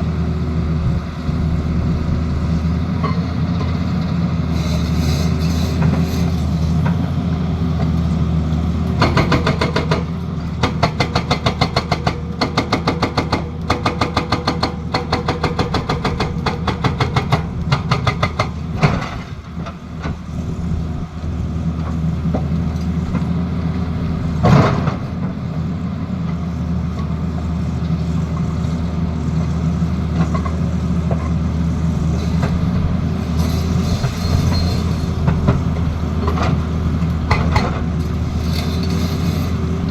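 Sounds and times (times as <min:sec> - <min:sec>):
excavator diesel engine running: 0:00.0 - 0:39.9
hydraulic breaker hammering: 0:09.0 - 0:20.2, 0:33.4 - 0:39.0.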